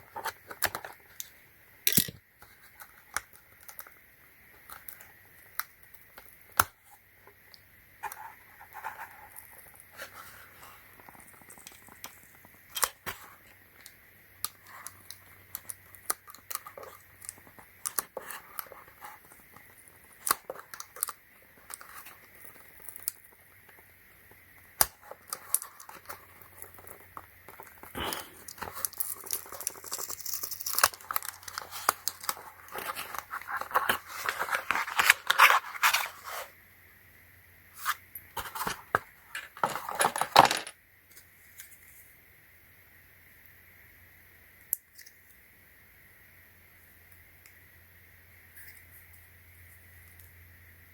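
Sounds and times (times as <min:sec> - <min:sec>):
plastic parts clicking and tapping: 0:01.9 - 0:02.2, 0:38.4 - 0:40.8
packaging crinkling and tearing: 0:24.8 - 0:36.5.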